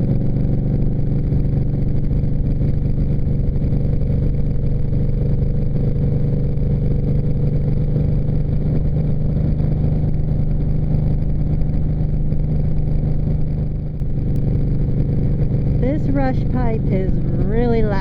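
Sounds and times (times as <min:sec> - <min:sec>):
loud motorcycle engine running: 0:00.0 - 0:18.0.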